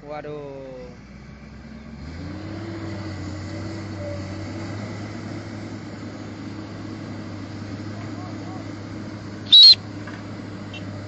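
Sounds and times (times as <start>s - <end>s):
excavator diesel engine revving: 0.8s - 11.0s.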